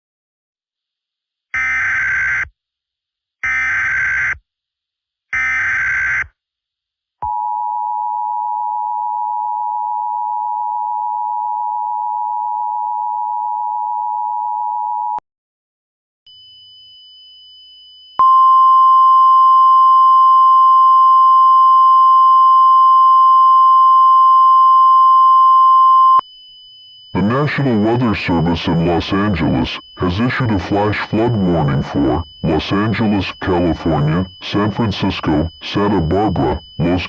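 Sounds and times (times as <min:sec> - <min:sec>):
data tone bursts: 0:26.9 - 0:37.0
two-tone attention signal: 0:27.1 - 0:37.0.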